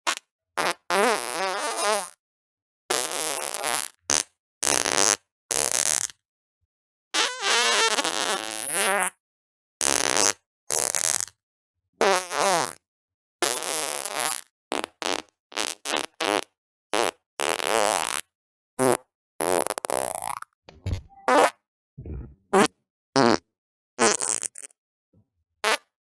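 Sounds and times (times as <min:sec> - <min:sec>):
farts: 0:20.7 - 0:22.4.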